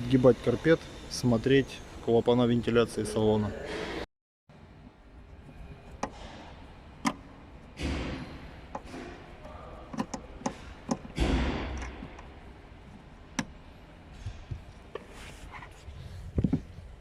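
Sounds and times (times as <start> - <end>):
carpet rustling scrapes: 14.9 - 17.0.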